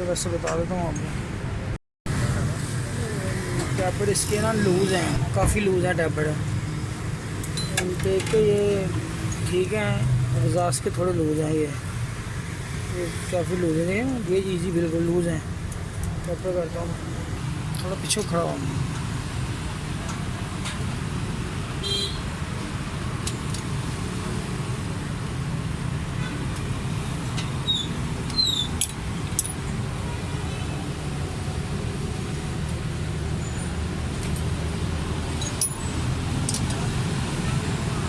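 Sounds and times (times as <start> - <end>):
hand tools clicking and tapping: 28.2 - 29.7, 35.3 - 36.9.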